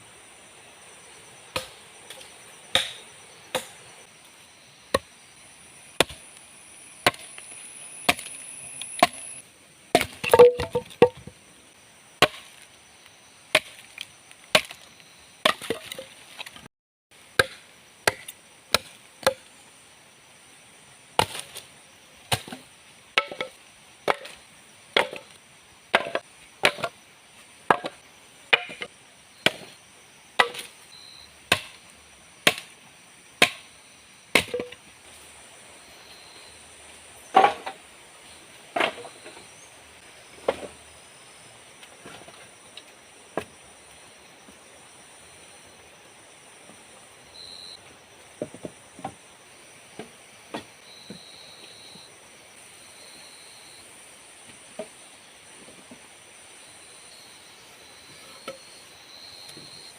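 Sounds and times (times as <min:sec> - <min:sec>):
forest insects buzzing: 0:00.0 - 0:16.6, 0:17.2 - 0:59.9
wood chopping: 0:01.5 - 0:03.8, 0:06.0 - 0:06.2, 0:07.0 - 0:07.3, 0:08.1 - 0:09.3, 0:09.9 - 0:11.3, 0:12.2 - 0:12.6, 0:13.5 - 0:14.8, 0:15.4 - 0:16.6, 0:17.4 - 0:19.4, 0:21.2 - 0:21.6, 0:23.2 - 0:24.4, 0:25.0 - 0:25.3, 0:25.9 - 0:27.0, 0:27.7 - 0:29.7, 0:30.4 - 0:30.7, 0:31.5 - 0:31.8, 0:32.4 - 0:32.8, 0:33.4 - 0:33.7, 0:34.3 - 0:34.8, 0:37.3 - 0:37.8.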